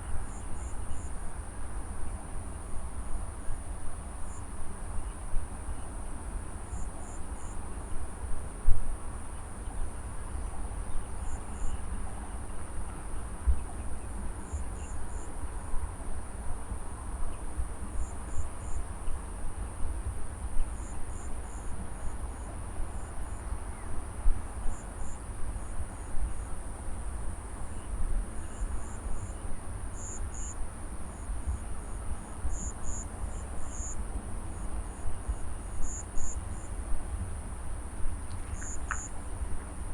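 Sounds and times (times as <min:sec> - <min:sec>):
short insect chirps: 0:38.3 - 0:39.2.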